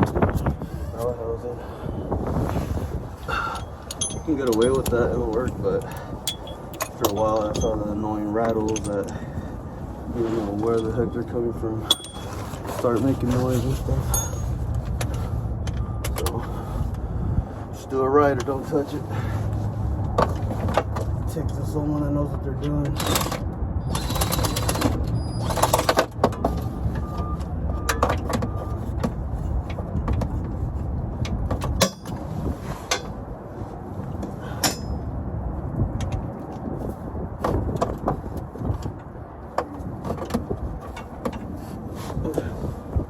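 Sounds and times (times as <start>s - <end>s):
wind buffeting microphone: 0.0s - 21.9s, 29.0s - 43.0s
clicks and knocks of mechanical work: 22.6s - 26.6s.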